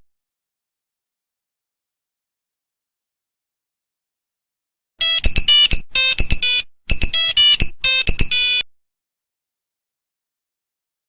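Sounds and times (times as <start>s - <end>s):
mobile phone ringtone: 5.0s - 8.6s.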